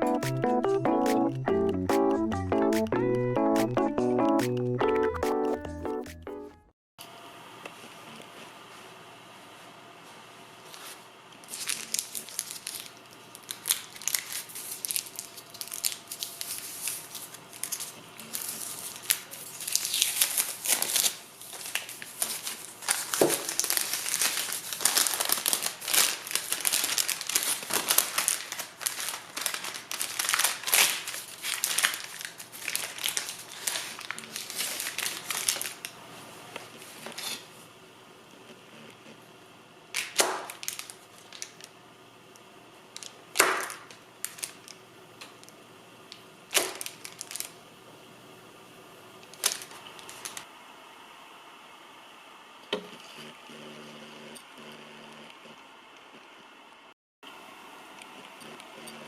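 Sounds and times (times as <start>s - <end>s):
plastic packaging crumpling: 10.7s - 36.0s, 40.0s - 41.7s, 43.0s - 44.8s, 46.5s - 47.6s, 49.3s - 50.5s.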